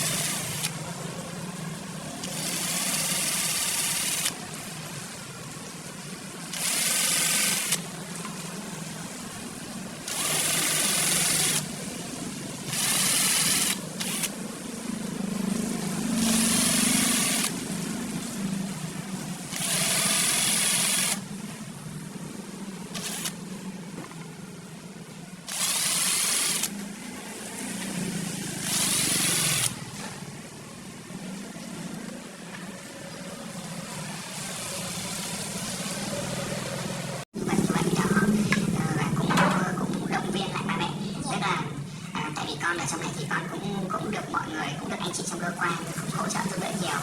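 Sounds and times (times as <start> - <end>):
power tool motor hum: 0.0 - 0.7, 2.2 - 4.4, 6.5 - 7.9, 10.0 - 11.8, 12.6 - 14.4, 16.1 - 17.6, 19.5 - 21.3, 22.9 - 23.4, 25.5 - 26.8, 28.6 - 29.8
harsh bursts of wood cutting: 0.0 - 0.8, 2.1 - 4.4, 6.4 - 7.9, 10.0 - 11.8, 12.6 - 14.4, 15.8 - 17.8, 19.4 - 21.3, 22.9 - 23.4, 25.5 - 26.8, 28.4 - 30.0.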